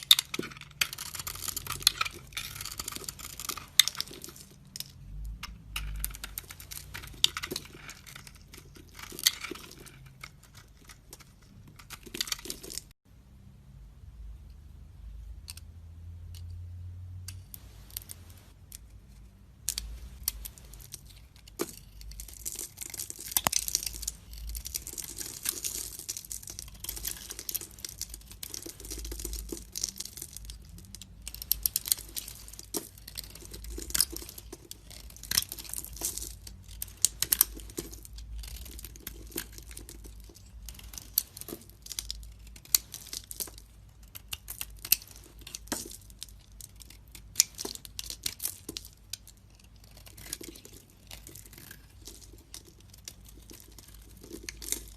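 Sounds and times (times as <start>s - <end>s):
knife scraping soap: 49.5s - 54.9s.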